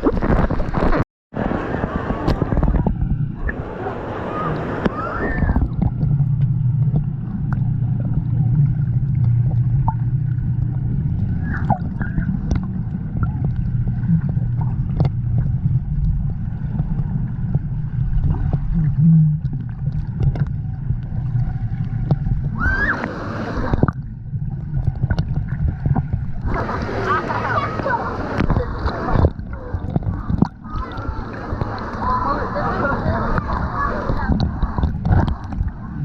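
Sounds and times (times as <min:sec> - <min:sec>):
water sloshing and gurgling: 0:00.0 - 0:36.0.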